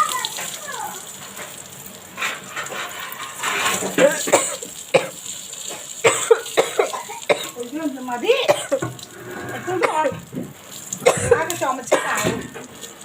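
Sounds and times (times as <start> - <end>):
chillies frying in hot oil: 0.0 - 13.0
person coughing: 4.0 - 5.1, 6.1 - 7.6, 8.5 - 8.9, 9.5 - 10.2, 11.0 - 12.4.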